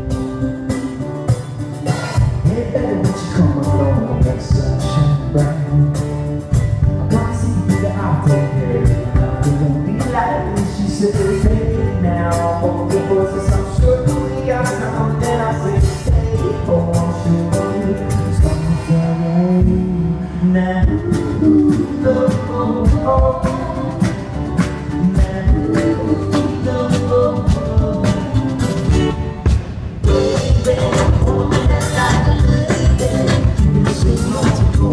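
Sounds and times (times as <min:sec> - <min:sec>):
drums steady beat: 0:00.0 - 0:20.0, 0:20.8 - 0:34.9
live band playing: 0:00.0 - 0:34.9.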